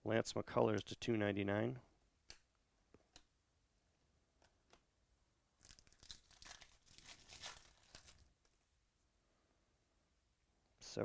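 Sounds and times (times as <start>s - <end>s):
foil wrapper crinkling and tearing: 5.6s - 8.3s.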